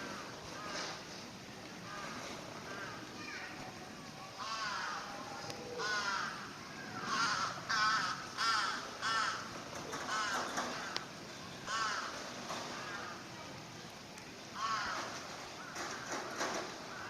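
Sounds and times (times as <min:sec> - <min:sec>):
crow cawing: 0:01.9 - 0:03.4, 0:04.3 - 0:13.2, 0:14.6 - 0:17.0.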